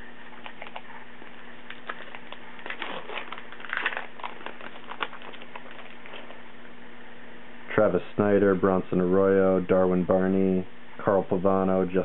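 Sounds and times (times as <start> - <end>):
faint steady hum: 0.0 - 12.0
wrapper tearing and crinkling: 1.7 - 6.4.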